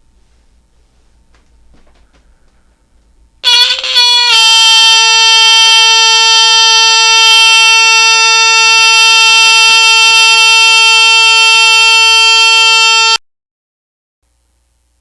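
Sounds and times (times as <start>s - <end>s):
smoke alarm buzzy tone: 3.4s - 13.2s.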